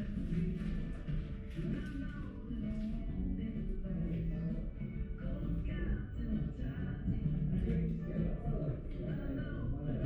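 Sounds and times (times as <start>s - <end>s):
background music with singing: 0.0s - 10.0s.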